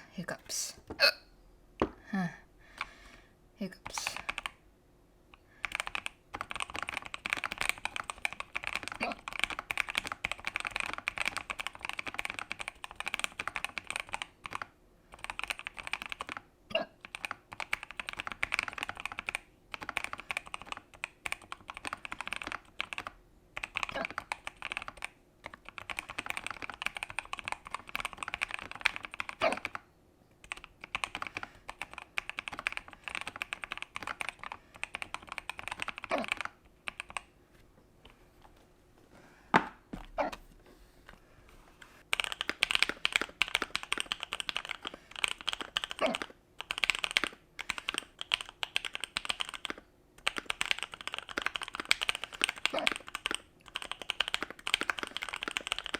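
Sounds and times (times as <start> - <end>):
person hiccuping: 0.9 - 1.4, 16.7 - 17.0, 29.4 - 29.7, 40.1 - 40.4
fast keyboard typing: 3.8 - 4.6, 5.5 - 29.8, 30.4 - 37.3, 42.0 - 55.9.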